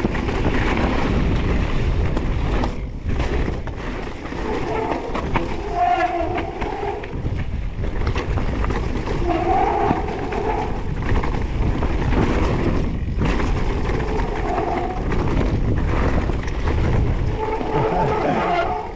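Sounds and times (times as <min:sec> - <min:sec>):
bike rumble and rattle: 0:00.0 - 0:18.9
wind buffeting microphone: 0:00.0 - 0:18.9
short whining tones: 0:04.3 - 0:07.2, 0:09.1 - 0:10.9, 0:17.2 - 0:18.9.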